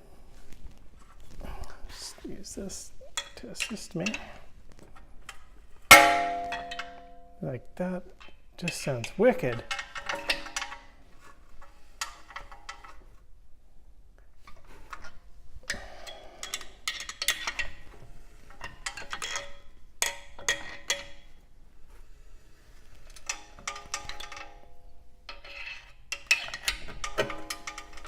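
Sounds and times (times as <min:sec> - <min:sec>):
metallic scraping and clanking: 0:08.2 - 0:13.2, 0:14.4 - 0:28.0.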